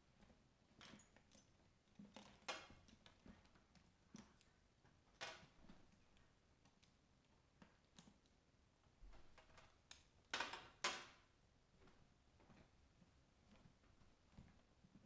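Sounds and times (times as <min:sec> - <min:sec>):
soft handling clicks and rustles: 0:00.0 - 0:08.4, 0:11.7 - 0:15.0.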